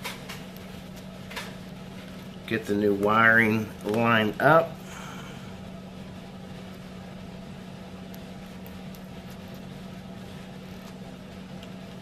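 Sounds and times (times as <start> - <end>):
low background hum: 0.0 - 12.0.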